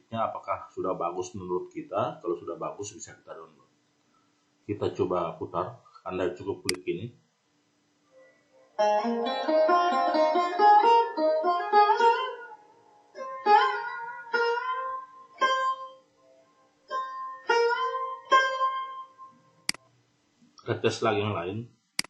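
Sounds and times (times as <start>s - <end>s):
plucked guitar music: 8.8s - 19.7s.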